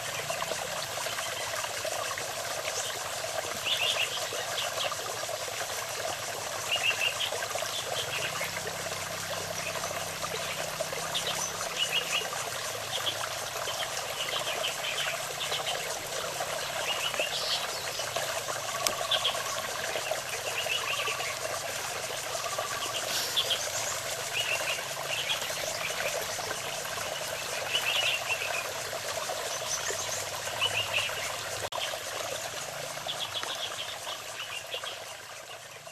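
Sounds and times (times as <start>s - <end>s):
trickling water: 0.0s - 35.9s
small birds chirping: 22.5s - 28.6s.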